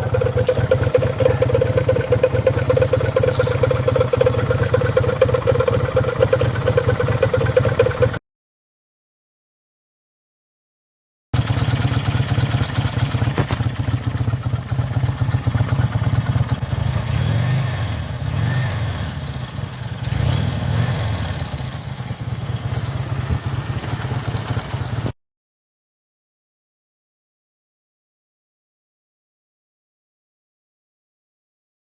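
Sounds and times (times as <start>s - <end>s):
motorcycle engine revving: 0.0s - 8.2s, 11.4s - 25.2s.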